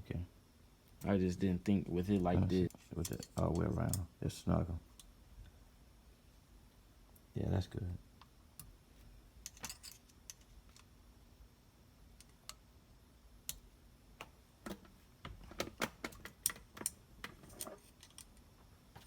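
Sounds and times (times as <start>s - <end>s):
tools and parts clicking: 2.2s - 4.1s, 9.4s - 10.9s, 15.5s - 18.5s.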